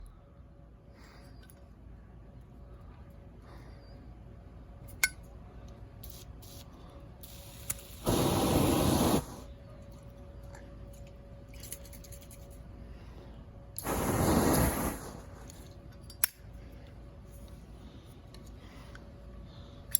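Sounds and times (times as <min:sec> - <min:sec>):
aerosol spray can hissing: 0:07.3 - 0:09.5, 0:13.8 - 0:15.6.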